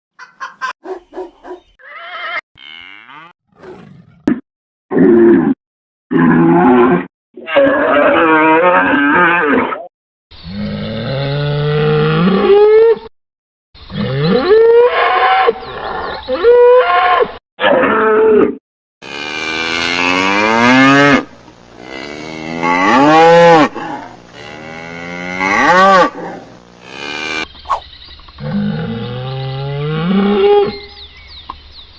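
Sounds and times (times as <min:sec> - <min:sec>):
cattle mooing and bellowing: 0:01.8 - 0:03.4, 0:10.5 - 0:12.9, 0:19.0 - 0:27.8.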